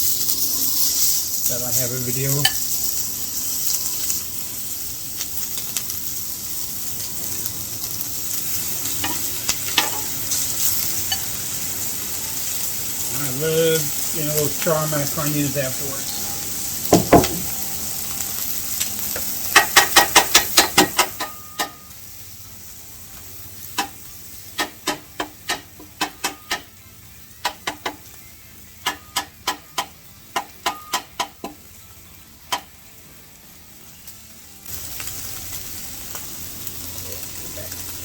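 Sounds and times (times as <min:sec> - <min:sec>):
meat sizzling on a griddle: 0:00.0 - 0:38.0
metal spatula clacking on griddle: 0:09.0 - 0:10.4, 0:19.2 - 0:21.8, 0:24.6 - 0:26.7, 0:27.4 - 0:28.1, 0:28.8 - 0:31.6, 0:32.5 - 0:32.7.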